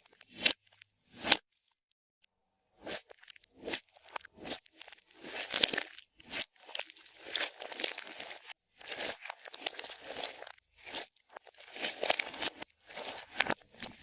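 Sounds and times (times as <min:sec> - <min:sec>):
slime crackling and popping: 0:03.2 - 0:14.0.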